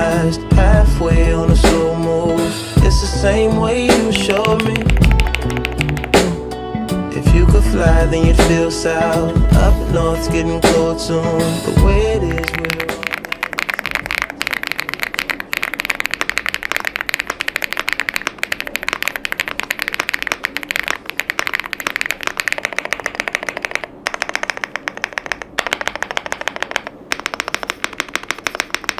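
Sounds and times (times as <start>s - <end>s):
fast mechanical keyboard typing: 4.0s - 6.4s, 12.3s - 28.9s.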